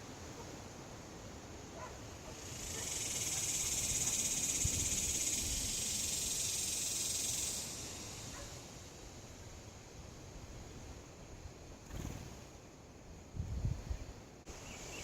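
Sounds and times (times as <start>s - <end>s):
cicada buzzing: 2.3s - 9.3s.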